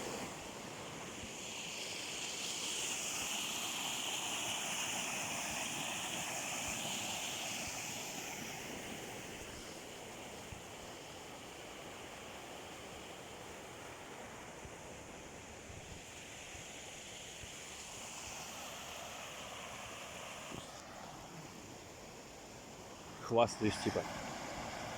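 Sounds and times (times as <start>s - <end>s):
stream flowing over rocks: 17.5s - 24.9s.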